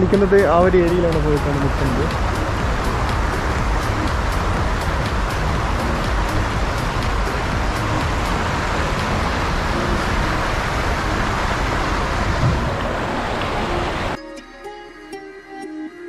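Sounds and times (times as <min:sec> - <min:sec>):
waterfall rushing: 0:00.0 - 0:14.2
background music: 0:00.0 - 0:16.0.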